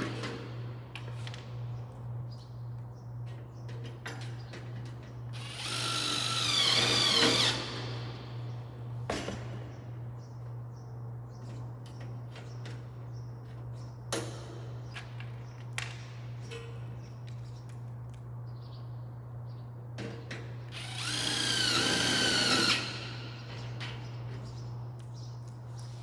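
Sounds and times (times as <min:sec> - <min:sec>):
screw gun whirring: 0:05.4 - 0:08.3, 0:20.8 - 0:23.8.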